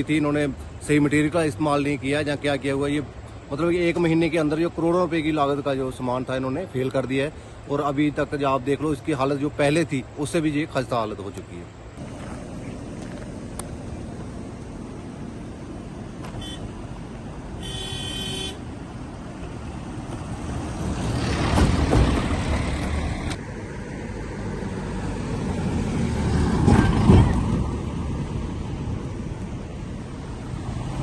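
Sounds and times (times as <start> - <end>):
traffic hum: 0.0 - 31.0
vehicles passing: 0.0 - 31.0
vehicle horn: 16.3 - 16.7, 17.6 - 18.6.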